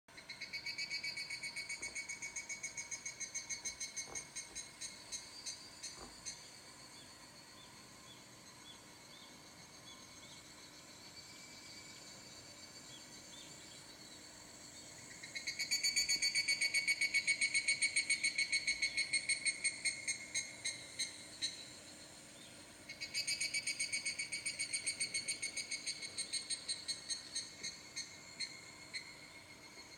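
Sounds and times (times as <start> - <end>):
small animal pulsed call: 0.1 - 13.8, 22.9 - 29.9.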